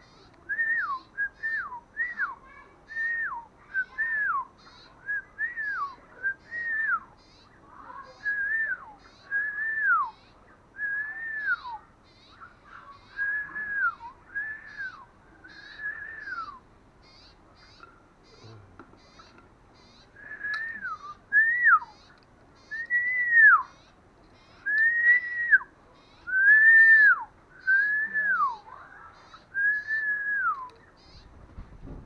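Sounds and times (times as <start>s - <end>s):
faint high chirps: 0.0s - 31.7s
bird whistled calls: 10.8s - 11.8s, 13.0s - 17.8s, 19.8s - 23.8s, 24.5s - 31.4s.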